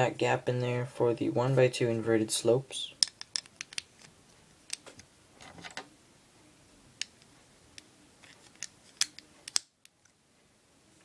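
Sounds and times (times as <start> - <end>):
plastic bricks clicking: 3.0 - 4.1, 8.2 - 10.1.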